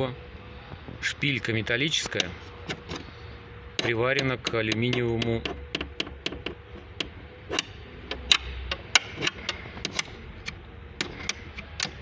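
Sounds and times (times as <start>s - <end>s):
metal parts clicking and tapping: 2.0s - 3.1s, 3.8s - 12.0s.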